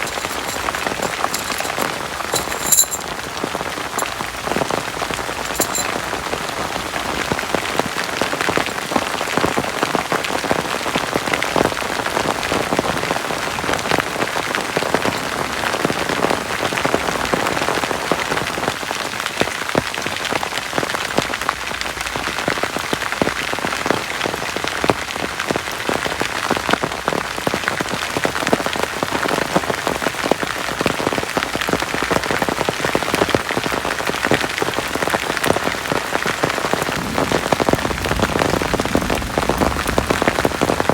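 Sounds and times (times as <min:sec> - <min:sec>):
heavy rain falling: 0:35.5 - 0:40.9.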